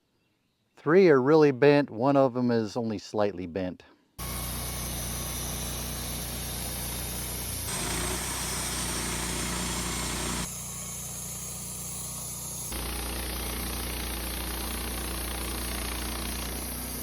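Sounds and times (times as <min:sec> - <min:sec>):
engine idling: 0:04.2 - 0:17.0.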